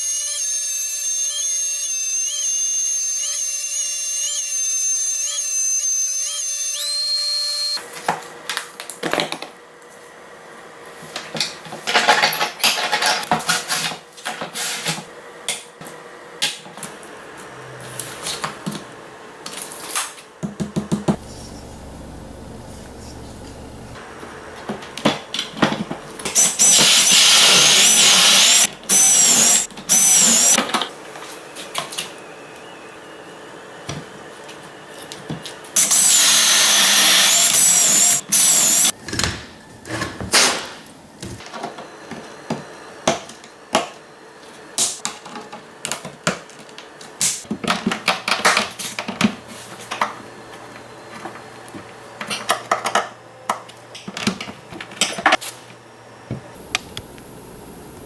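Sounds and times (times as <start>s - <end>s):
power tool whining: 21.1s - 24.0s, 26.2s - 33.1s, 35.8s - 40.4s.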